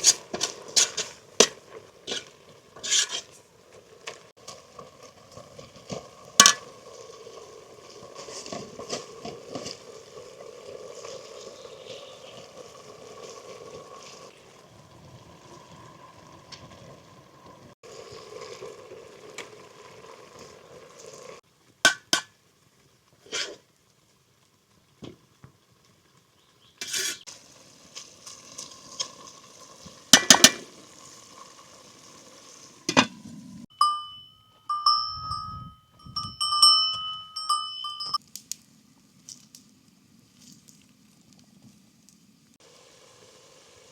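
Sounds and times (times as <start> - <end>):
food sizzling in a pan: 0.0 - 17.0, 17.6 - 21.4, 26.6 - 33.7, 42.6 - 43.9.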